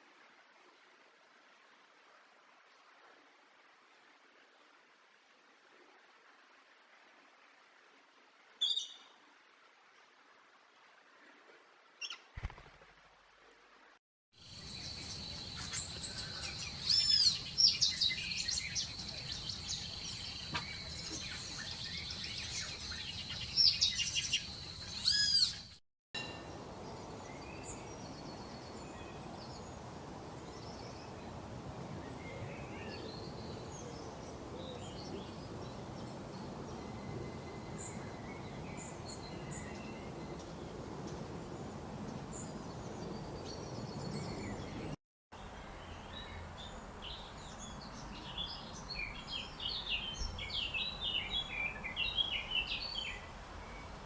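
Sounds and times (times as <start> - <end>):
outdoor background hiss: 0.0 - 54.0
birds chirping and singing: 14.7 - 25.7.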